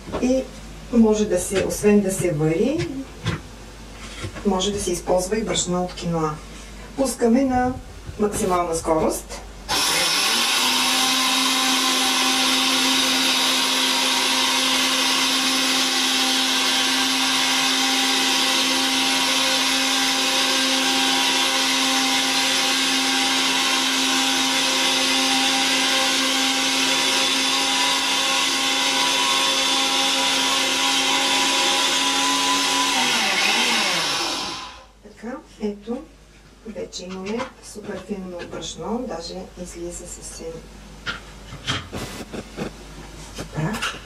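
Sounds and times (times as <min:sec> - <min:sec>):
blender motor whine: 0:09.7 - 0:34.9.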